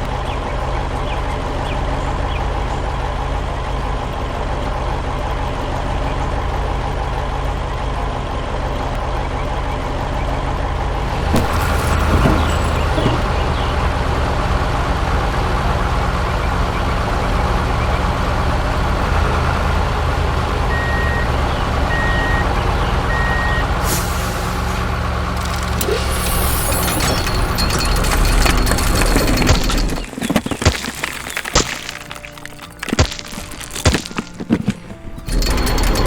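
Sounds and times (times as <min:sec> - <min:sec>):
heavy truck engine running: 0:00.0 - 0:36.0
reversing beeps: 0:20.6 - 0:23.8
burst of hiss: 0:23.8 - 0:24.8.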